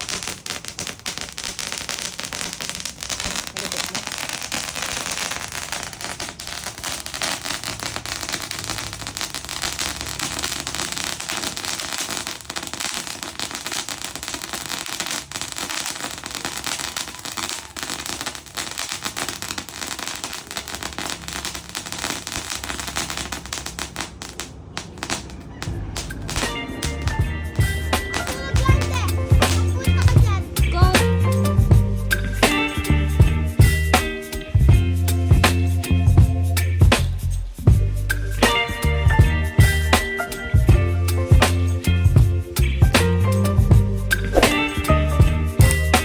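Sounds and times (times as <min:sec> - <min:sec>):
firecracker rattle of rapid bangs: 0:00.0 - 0:30.4, 0:44.3 - 0:45.0, 0:45.6 - 0:46.0.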